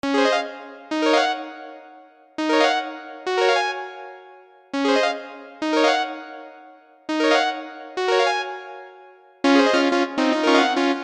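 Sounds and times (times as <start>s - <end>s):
electric piano ringtone melody: 7.1s - 11.0s.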